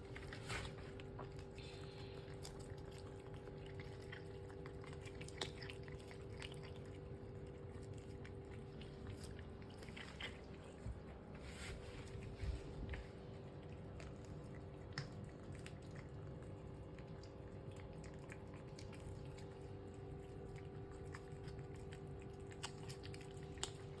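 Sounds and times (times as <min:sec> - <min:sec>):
cat chewing food: 0:00.0 - 0:24.0
low steady hum: 0:00.0 - 0:24.0.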